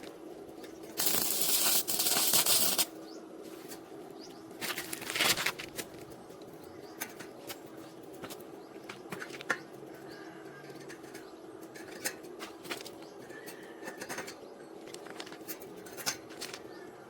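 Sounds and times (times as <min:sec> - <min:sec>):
arc welding crackling: 0:00.0 - 0:03.1.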